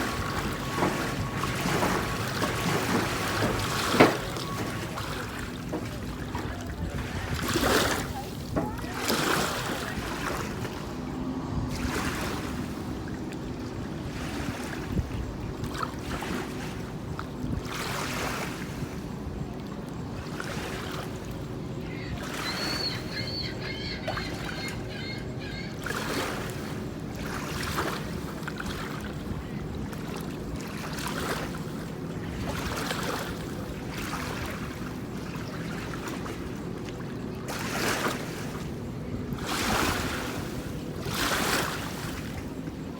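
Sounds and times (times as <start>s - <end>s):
water washing and splashing: 0.0s - 18.7s
boat motor droning: 0.0s - 42.9s.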